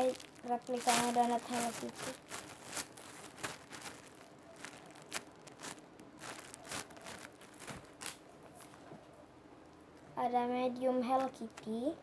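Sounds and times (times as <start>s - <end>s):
squishy toys crinkling: 0.0s - 8.8s.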